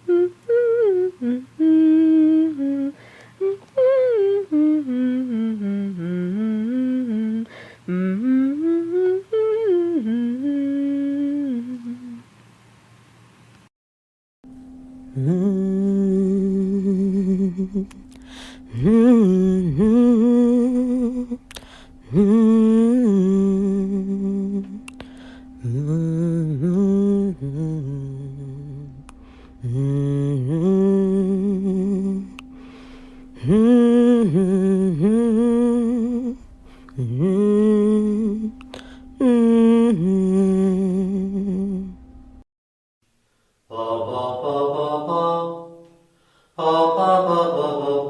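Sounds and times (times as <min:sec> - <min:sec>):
person humming: 0:00.0 - 0:12.3, 0:15.1 - 0:32.6, 0:33.4 - 0:42.0
faint steady tone: 0:00.0 - 0:13.5, 0:14.5 - 0:42.4.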